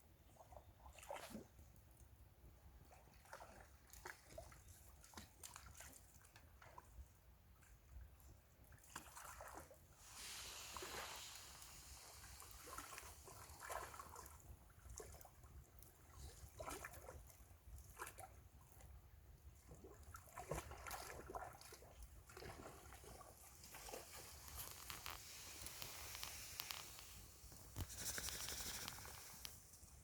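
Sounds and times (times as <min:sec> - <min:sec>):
river water trickling: 0:02.8 - 0:30.0
campfire crackling and popping: 0:24.4 - 0:29.7.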